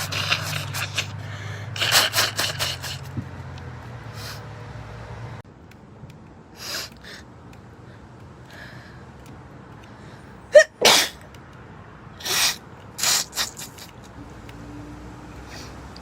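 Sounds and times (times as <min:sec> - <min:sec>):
short puffs of breath: 0:00.0 - 0:03.2, 0:04.1 - 0:04.5, 0:12.2 - 0:13.9
girl sneezing: 0:10.5 - 0:11.2, 0:12.2 - 0:13.9.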